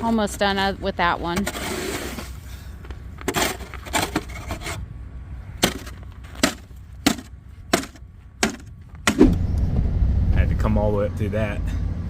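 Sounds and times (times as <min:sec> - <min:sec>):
low steady rumble: 0:04.7 - 0:12.0.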